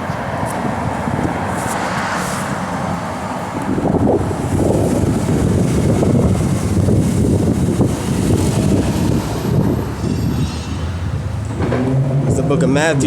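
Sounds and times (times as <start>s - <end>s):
low rumbling noise: 2.7s - 13.0s.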